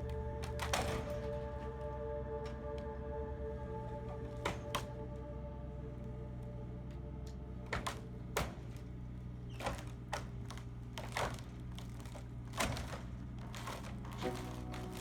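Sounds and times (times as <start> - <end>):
wood structure cracking and knocking: 0.0 - 2.6, 4.0 - 5.0, 6.8 - 15.0
excavator engine running: 0.0 - 15.0.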